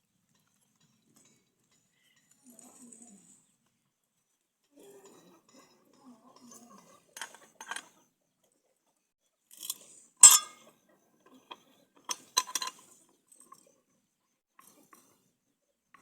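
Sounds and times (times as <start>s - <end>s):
metal parts clinking: 7.2s - 7.9s, 9.5s - 10.6s, 12.1s - 12.9s.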